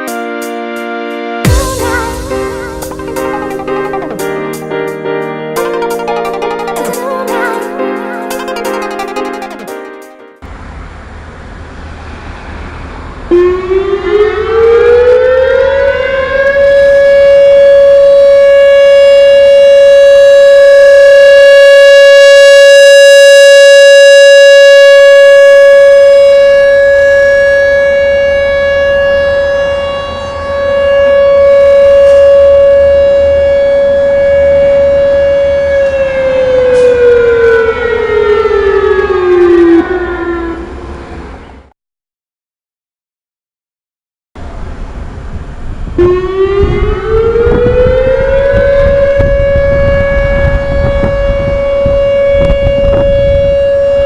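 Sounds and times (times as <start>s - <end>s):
electronic warning siren: 13.3s - 41.0s, 46.0s - 54.0s.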